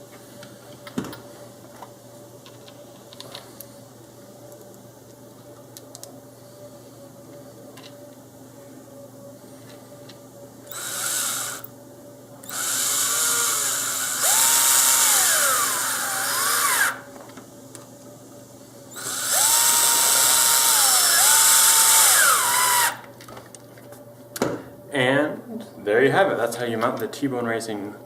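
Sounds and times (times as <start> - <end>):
electric drill whining: 10.7 - 11.7, 12.4 - 17.1, 18.9 - 23.0.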